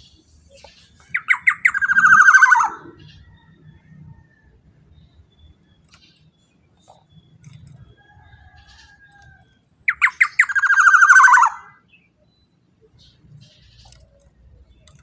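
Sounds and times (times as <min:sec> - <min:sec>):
oriole calling: 0:01.1 - 0:03.6, 0:09.9 - 0:11.8.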